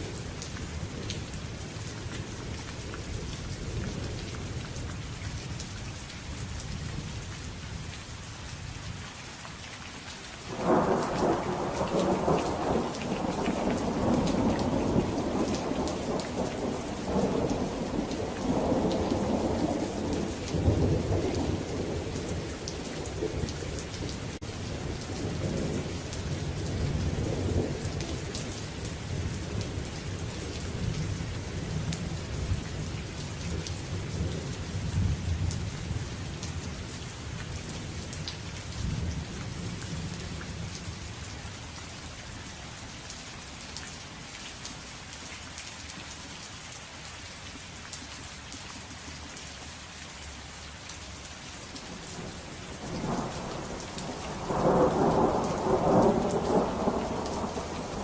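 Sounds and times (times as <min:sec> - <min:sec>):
steady rain: 0:00.0 - 0:58.0
rolling thunder: 0:52.2 - 0:58.0.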